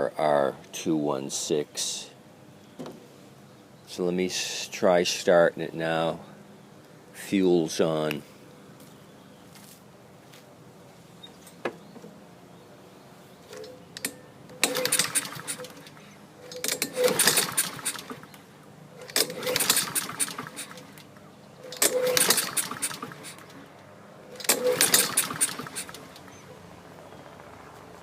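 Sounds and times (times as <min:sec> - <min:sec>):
lawn mower engine cranking: 0:13.5 - 0:26.5.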